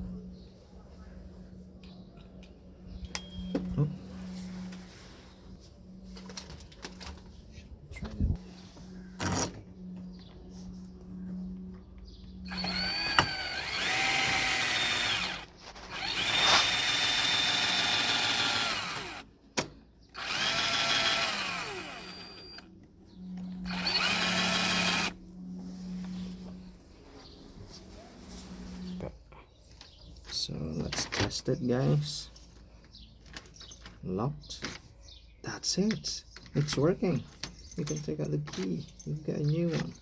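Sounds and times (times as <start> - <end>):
cordless drill motor whine: 12.5 - 19.3, 20.2 - 22.7, 23.4 - 25.2.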